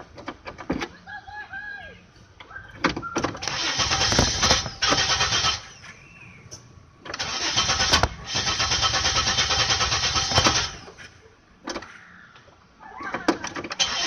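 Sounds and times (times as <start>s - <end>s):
car engine cranking: 2.4s - 11.9s, 13.1s - 14.0s.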